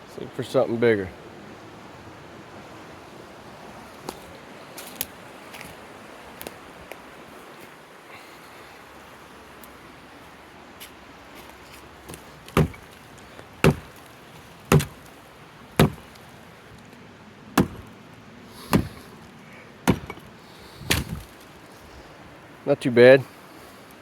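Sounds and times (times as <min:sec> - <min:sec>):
hatchet chopping wood: 0:12.1 - 0:12.9, 0:13.6 - 0:14.1, 0:14.7 - 0:15.1, 0:15.8 - 0:16.2, 0:17.6 - 0:18.0, 0:18.6 - 0:19.1, 0:19.8 - 0:21.3.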